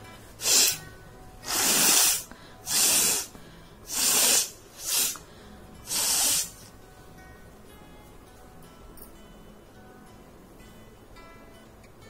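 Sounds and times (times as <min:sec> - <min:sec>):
person blowing nose: 0:00.4 - 0:00.8, 0:01.4 - 0:05.2, 0:05.9 - 0:06.7.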